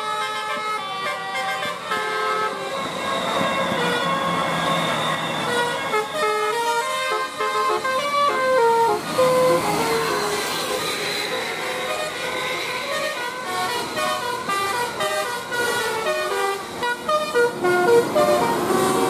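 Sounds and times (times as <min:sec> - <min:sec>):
musical air horn playing a tune: 0:00.0 - 0:19.0.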